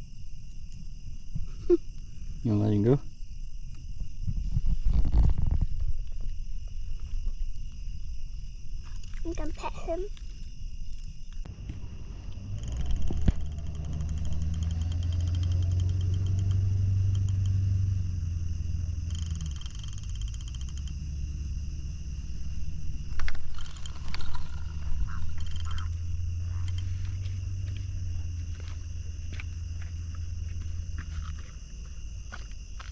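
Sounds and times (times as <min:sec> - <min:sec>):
night insects buzzing: 0:00.0 - 0:32.9
frogs croaking: 0:10.8 - 0:31.5.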